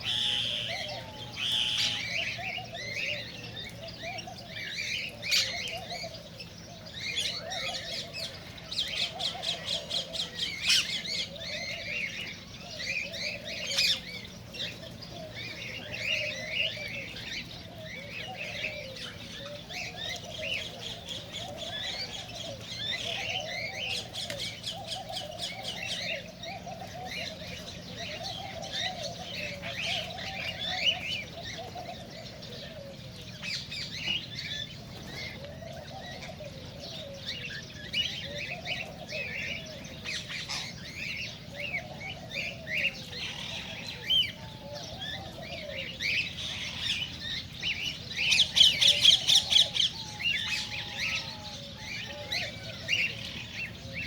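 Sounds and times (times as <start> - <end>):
cockatiels chirping and squawking: 37.3 - 54.0.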